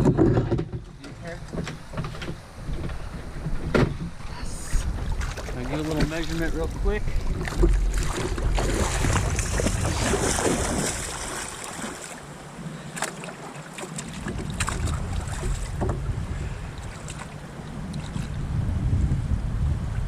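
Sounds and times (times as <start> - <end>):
wind buffeting microphone: 0.0 - 13.0, 13.8 - 20.0
water noise: 0.0 - 20.0.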